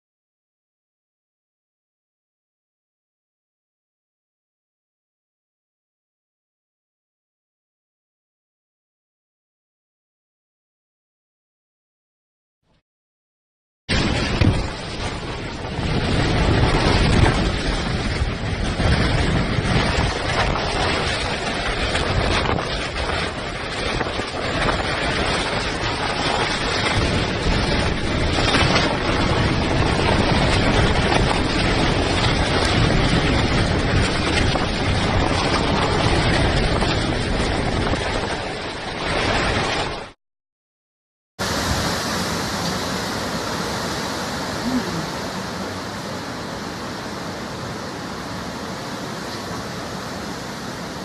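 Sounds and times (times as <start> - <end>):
strong wind buffeting microphone: 13.9 - 40.2.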